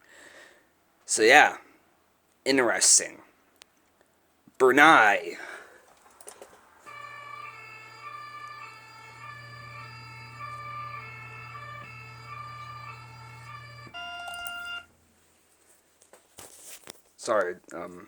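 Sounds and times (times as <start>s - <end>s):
electronic two-tone siren: 6.9s - 14.9s.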